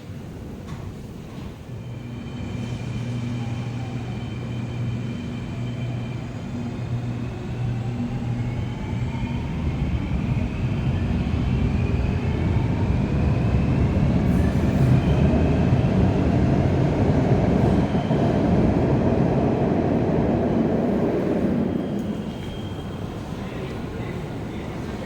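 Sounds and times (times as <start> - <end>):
train wheels rumbling: 0.2 - 25.0
train motor whine rising: 16.9 - 23.3.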